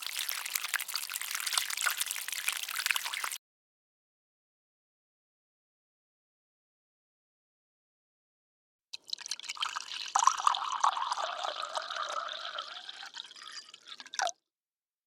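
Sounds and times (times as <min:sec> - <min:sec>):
water splashing and trickling: 0:00.0 - 0:03.4, 0:09.0 - 0:14.4.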